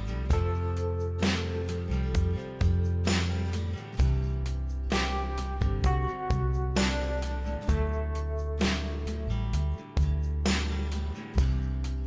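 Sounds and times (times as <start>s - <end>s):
guitar music with bass and drums: 0.0s - 12.0s.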